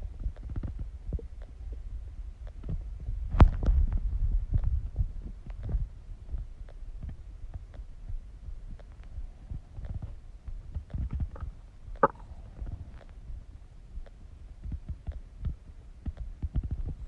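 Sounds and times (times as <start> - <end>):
stomach growling and gurgling: 9.1 - 13.2.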